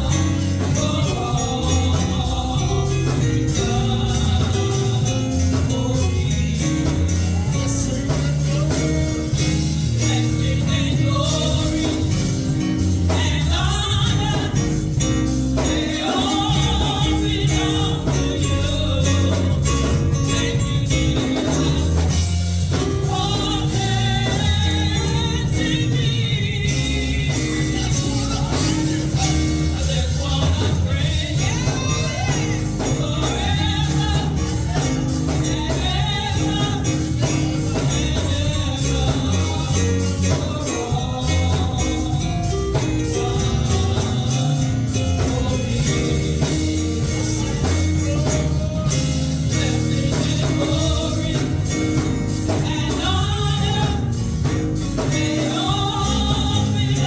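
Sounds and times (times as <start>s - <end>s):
gospel singing over a band: 0.0s - 57.0s.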